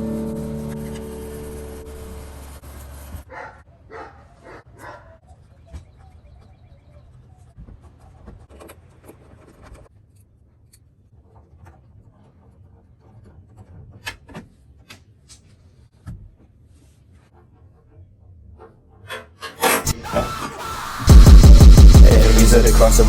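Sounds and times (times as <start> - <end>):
rubbing or scraping: 16.6 - 23.0.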